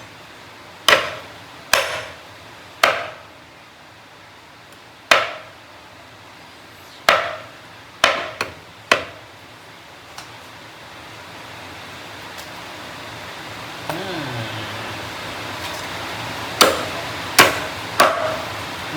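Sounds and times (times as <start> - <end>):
knife chopping on cutting board: 2.8 - 3.2, 5.1 - 5.5, 7.1 - 7.4, 8.0 - 9.2.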